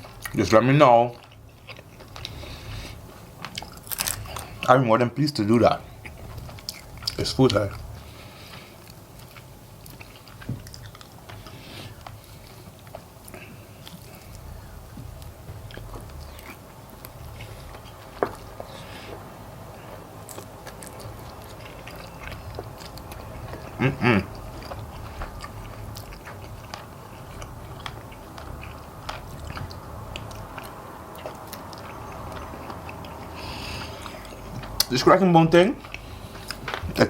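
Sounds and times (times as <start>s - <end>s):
chewing and crunching bones: 0.0s - 4.8s, 5.7s - 35.1s
person vocal sound: 23.8s - 24.4s.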